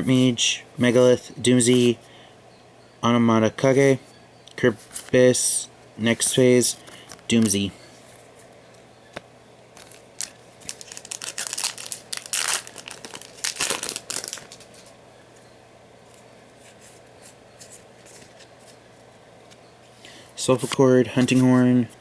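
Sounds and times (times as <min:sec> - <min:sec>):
foil card pack tearing and crinkling: 0:09.8 - 0:14.9.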